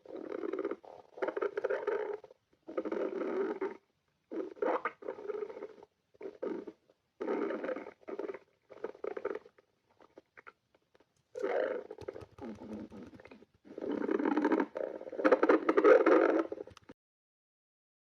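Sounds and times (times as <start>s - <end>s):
stomach growling: 0.0s - 17.0s.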